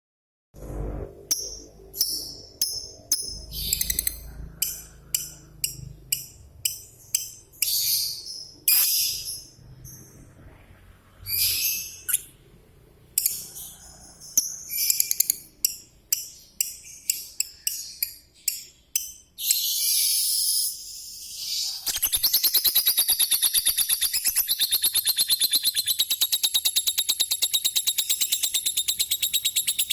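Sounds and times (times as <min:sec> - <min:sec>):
lovebird chirping and screeching: 0:03.1 - 0:10.3, 0:11.2 - 0:12.4, 0:13.2 - 0:15.6, 0:19.4 - 0:29.9.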